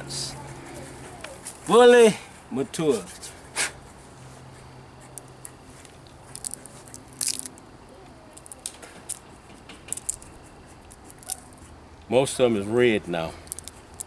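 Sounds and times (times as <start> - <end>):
peanut shells cracking: 5.1 - 11.6, 13.4 - 14.0.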